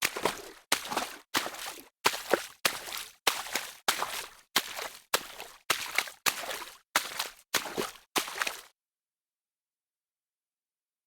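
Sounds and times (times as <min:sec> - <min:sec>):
footsteps splashing in shallow water: 0:00.0 - 0:08.7.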